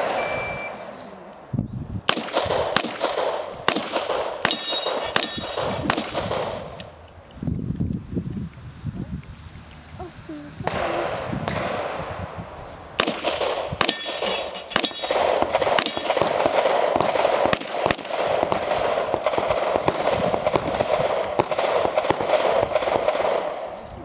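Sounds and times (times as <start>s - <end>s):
steel targets ringing: 4.5s - 5.6s, 13.8s - 16.2s.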